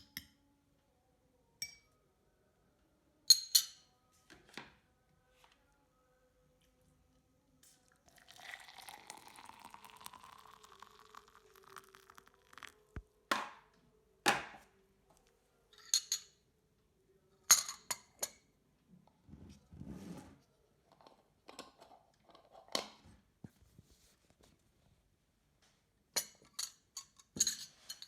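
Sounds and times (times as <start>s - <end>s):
glassware clinks: 3.3s - 3.8s
liquid pouring into glass: 7.9s - 13.0s.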